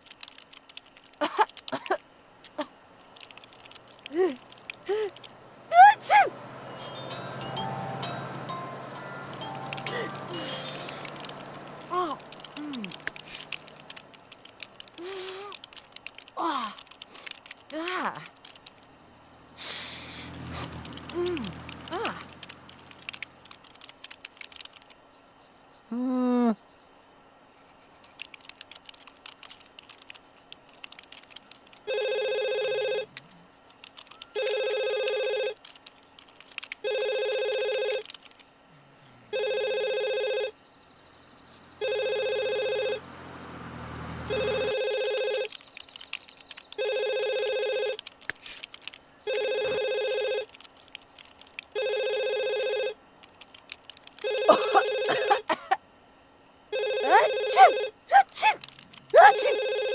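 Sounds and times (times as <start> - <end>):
telephone ringing: 6.8 - 12.5, 31.9 - 33.1, 34.3 - 35.6, 36.9 - 38.0, 39.4 - 40.6, 41.8 - 43.0, 44.3 - 45.5, 46.8 - 48.0, 49.3 - 50.5, 51.8 - 53.0, 54.2 - 55.5, 56.8 - 58.0, 59.2 - 59.9
woman sneezing: 57.1 - 58.6.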